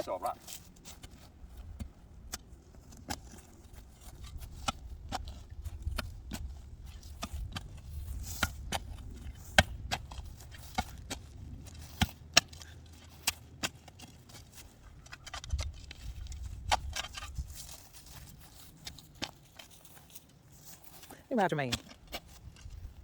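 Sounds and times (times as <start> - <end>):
digging tool striking rocky soil: 0.5 - 19.9.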